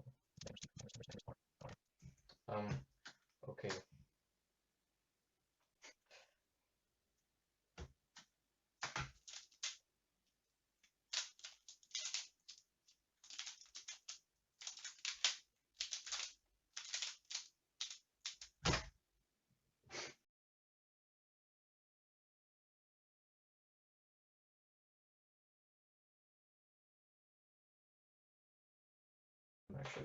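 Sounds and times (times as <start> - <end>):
puzzle cube clicking and rattling: 11.1 - 12.5, 13.2 - 18.6.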